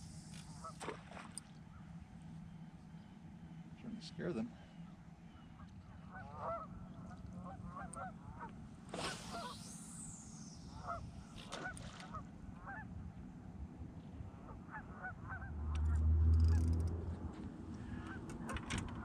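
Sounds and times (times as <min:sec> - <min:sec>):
geese honking: 0:06.1 - 0:06.7, 0:10.8 - 0:11.0
falling whoosh: 0:09.0 - 0:11.1.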